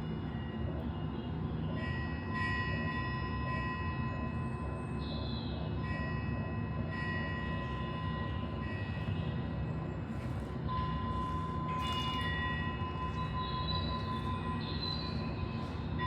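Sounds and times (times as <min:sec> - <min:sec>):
sustained high chime tones: 0:10.7 - 0:16.0.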